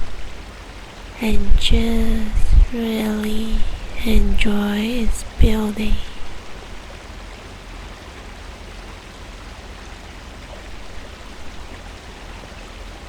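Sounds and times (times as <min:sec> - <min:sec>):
rain-like rushing hiss: 0:00.0 - 0:13.0
low rumble: 0:01.2 - 0:06.8.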